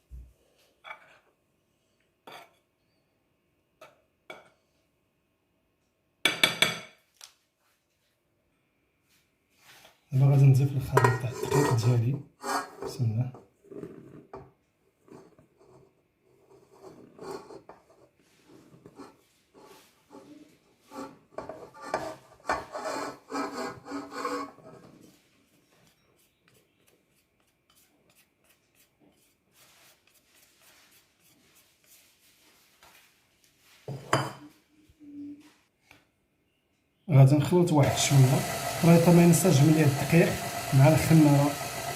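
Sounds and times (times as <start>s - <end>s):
utensil scraping a bowl: 10.8s - 14.4s, 15.0s - 32.0s, 37.8s - 41.9s.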